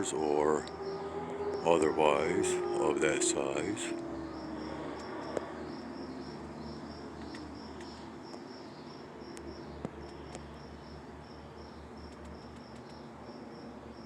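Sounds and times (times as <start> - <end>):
crickets chirping: 0.0 - 14.0
faint clicks: 12.1 - 13.0.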